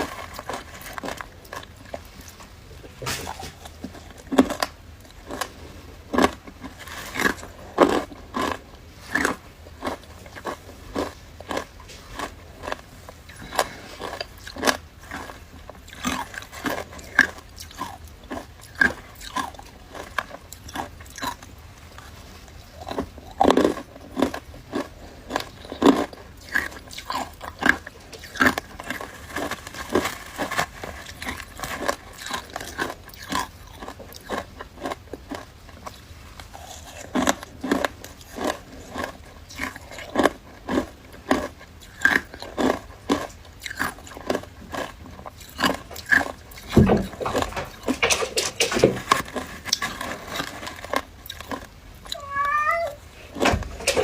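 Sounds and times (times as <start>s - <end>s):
person crunching frozen ice: 0.0s - 1.8s, 3.9s - 22.1s, 22.8s - 46.7s, 49.1s - 52.2s.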